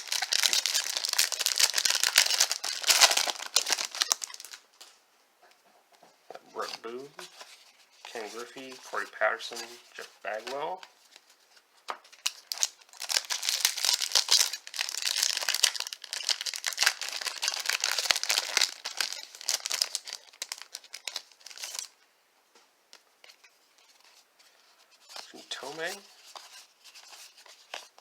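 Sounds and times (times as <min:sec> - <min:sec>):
wrapper tearing and crinkling: 0:00.0 - 0:04.6, 0:12.1 - 0:22.0.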